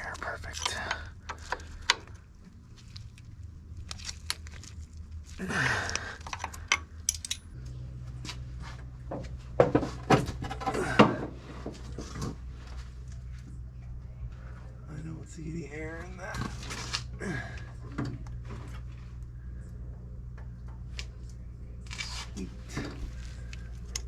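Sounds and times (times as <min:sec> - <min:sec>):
low steady hum: 0:00.0 - 0:24.0.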